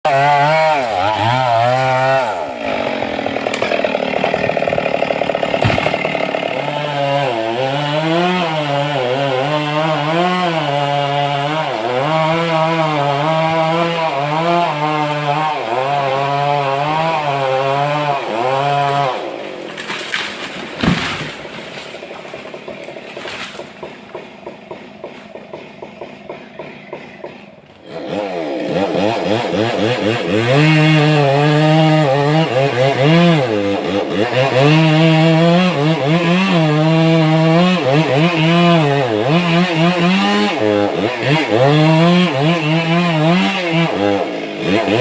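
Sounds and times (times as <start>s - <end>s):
chainsaw cutting wood: 0.0s - 45.0s
loud thump: 5.6s - 6.0s, 20.8s - 21.4s.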